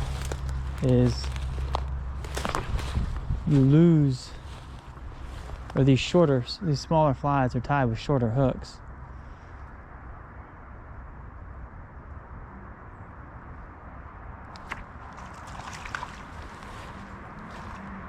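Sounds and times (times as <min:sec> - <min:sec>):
wind rumble on microphone: 0:00.0 - 0:08.2, 0:08.8 - 0:18.0
light splashing: 0:14.5 - 0:17.5
running creek water: 0:14.6 - 0:18.0.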